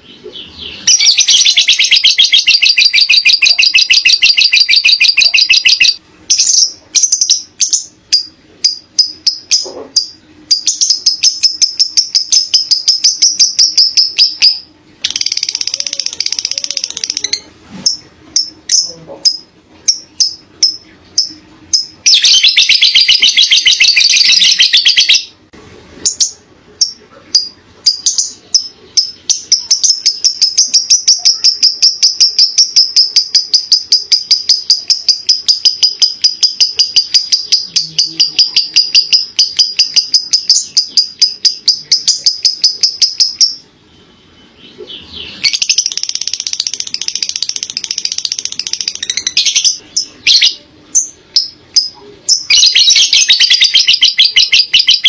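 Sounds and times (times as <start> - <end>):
lovebird chattering trills: 0.0 - 25.3, 26.0 - 43.7, 44.6 - 55.0
sharp bird chirps: 0.0 - 25.3, 44.4 - 55.0.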